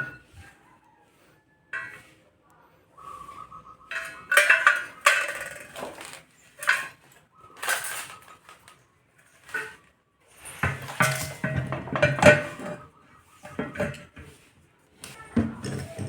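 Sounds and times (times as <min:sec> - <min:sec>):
metal objects clinking: 0:01.8 - 0:02.0, 0:03.9 - 0:14.2.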